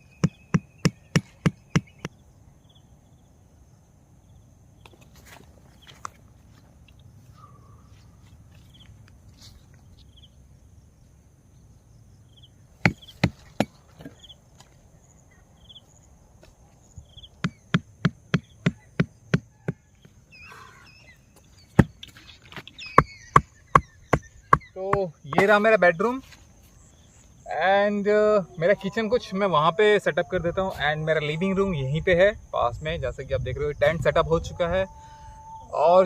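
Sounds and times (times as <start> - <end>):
insects chirping: 0.0 - 36.0
sharp knocking on wood: 0.2 - 2.2, 12.8 - 13.8, 17.4 - 19.9, 23.0 - 25.6.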